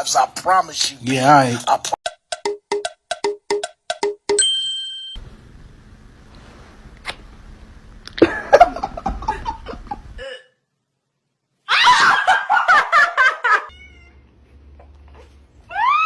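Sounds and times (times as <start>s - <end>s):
people laughing: 8.2s - 10.2s, 11.9s - 13.7s.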